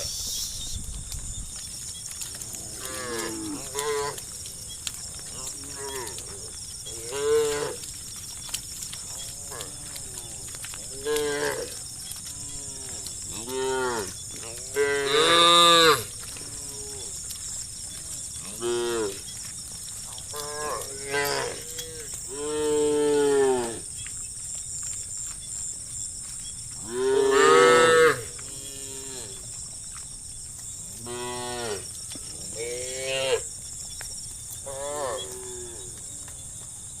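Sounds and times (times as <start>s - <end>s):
cows mooing: 2.2s - 4.3s, 5.2s - 8.0s, 9.1s - 17.2s, 17.9s - 19.3s, 20.2s - 23.9s, 26.8s - 29.5s, 31.0s - 33.5s, 34.6s - 36.0s.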